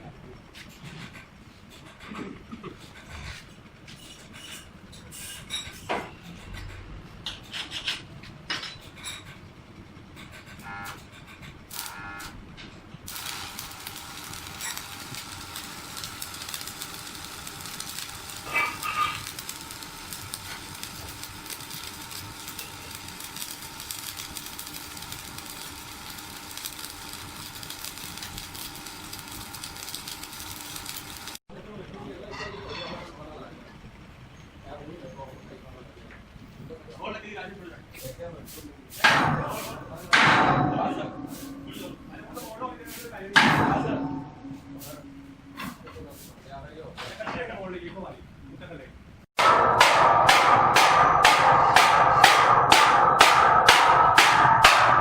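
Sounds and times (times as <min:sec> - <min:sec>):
machine hissing: 0:13.1 - 0:31.4, 0:49.4 - 0:55.0.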